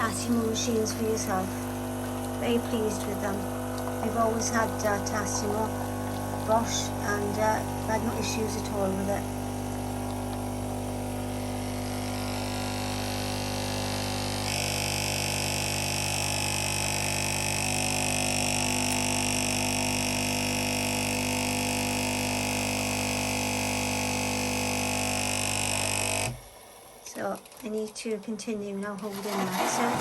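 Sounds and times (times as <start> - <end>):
pod machine pump humming: 0.0 - 30.0
hissing of flowing drink: 1.4 - 11.0.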